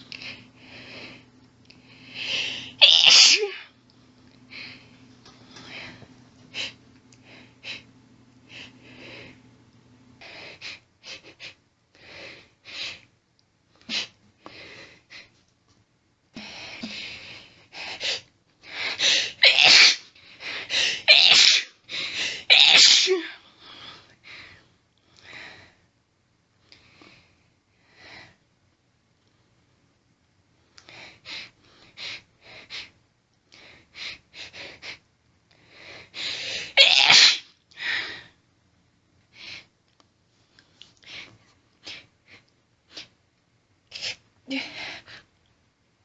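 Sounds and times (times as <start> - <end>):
woman sneezing: 2.7 - 3.7, 19.4 - 20.1, 21.0 - 21.8, 22.4 - 23.4, 36.7 - 37.5.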